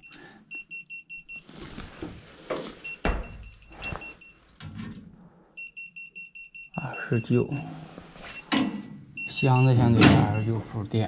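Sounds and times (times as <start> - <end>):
handling rustle: 1.3 - 4.6.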